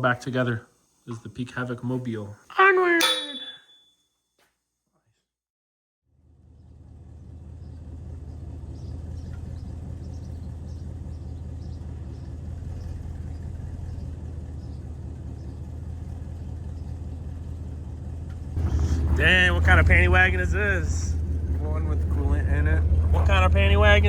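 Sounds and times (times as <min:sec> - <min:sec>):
vehicle engine running: 0:06.1 - 0:24.0.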